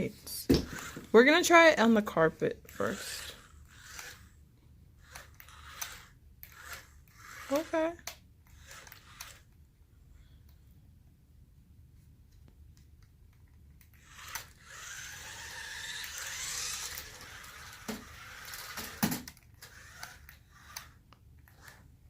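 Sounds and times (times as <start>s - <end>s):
toy car motor whirring: 0.5s - 4.4s, 5.0s - 9.6s, 13.8s - 21.9s.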